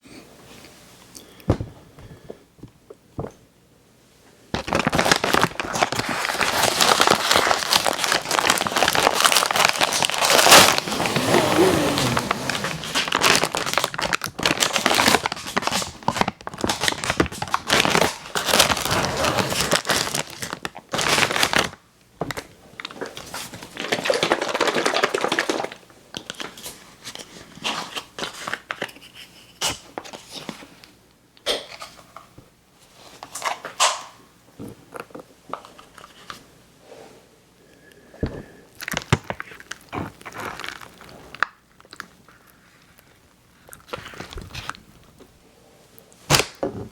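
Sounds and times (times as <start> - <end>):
plastic packaging crinkling: 4.6 - 28.9, 38.8 - 45.2.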